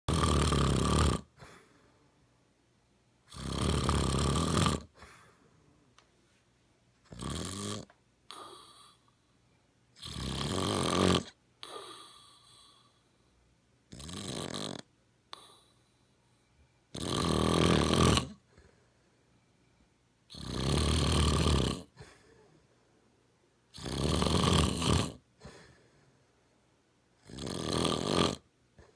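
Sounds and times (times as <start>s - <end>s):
man snoring: 0.1s - 1.5s, 3.3s - 5.0s, 7.1s - 9.0s, 10.0s - 13.0s, 13.9s - 15.7s, 16.9s - 18.4s, 20.3s - 22.0s, 23.8s - 25.2s, 27.2s - 28.5s
faint breath: 1.3s - 3.3s, 4.9s - 6.5s, 8.3s - 9.8s, 11.6s - 13.6s, 15.3s - 16.9s, 18.4s - 20.0s, 21.9s - 23.2s, 25.4s - 26.6s.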